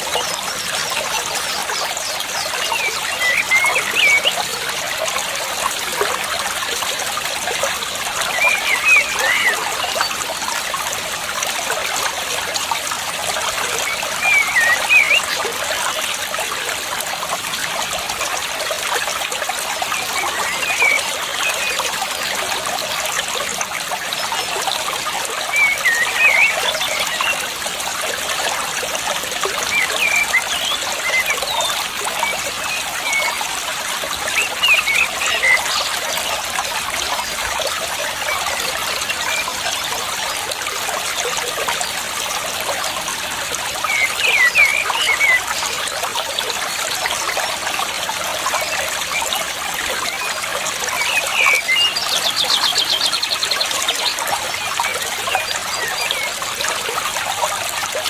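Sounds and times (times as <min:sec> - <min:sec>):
water trickling: 0:00.0 - 0:58.0
bird twittering: 0:13.9 - 0:15.3, 0:25.6 - 0:27.4.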